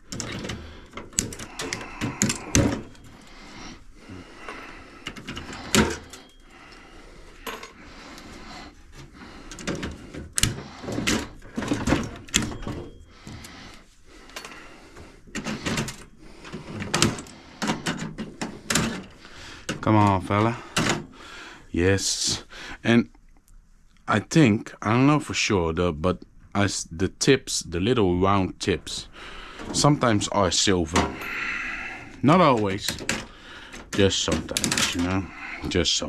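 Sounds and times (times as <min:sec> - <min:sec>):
metallic clicks and clanks: 0:00.0 - 0:03.1.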